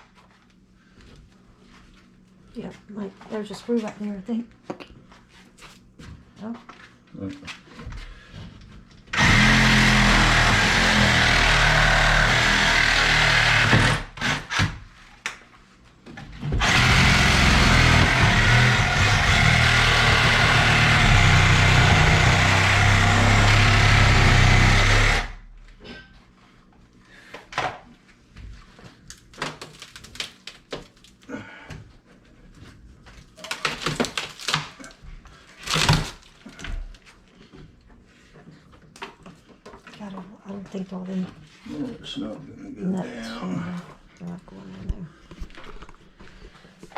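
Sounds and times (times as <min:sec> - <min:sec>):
power saw cutting wood: 0:09.1 - 0:14.8, 0:16.6 - 0:25.4.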